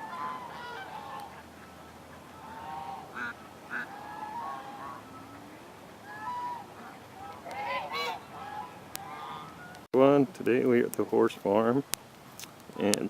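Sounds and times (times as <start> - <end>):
ducks and ducklings calling: 0.0 - 9.9.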